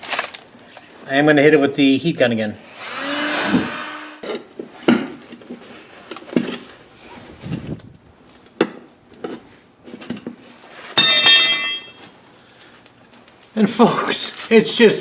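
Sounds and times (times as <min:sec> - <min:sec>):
tire spoon clinking on metal rim: 0:11.0 - 0:12.1.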